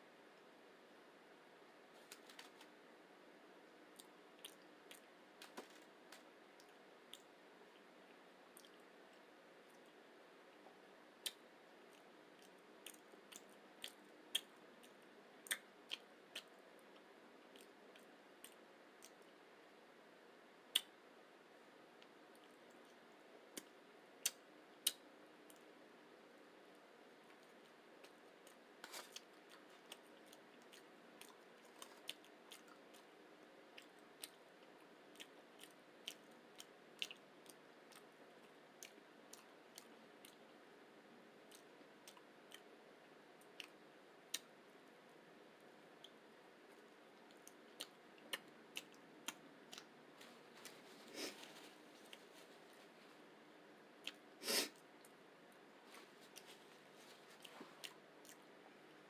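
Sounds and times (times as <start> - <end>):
person chewing food: 3.9 - 8.9, 11.2 - 19.3, 27.3 - 40.5, 46.8 - 53.4, 54.0 - 59.0
mouth clicks and smacks: 20.7 - 20.9
faint hiss: 50.1 - 59.0.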